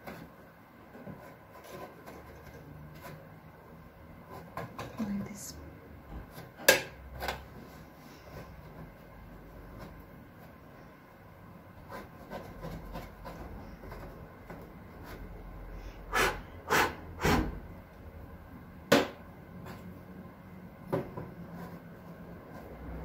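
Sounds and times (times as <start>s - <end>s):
cloth rubbing fan blades: 7.1s - 17.7s.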